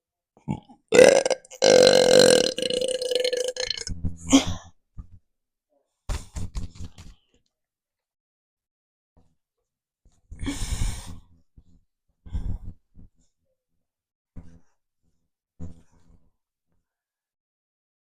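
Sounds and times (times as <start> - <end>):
person burping: 0.4 - 4.6.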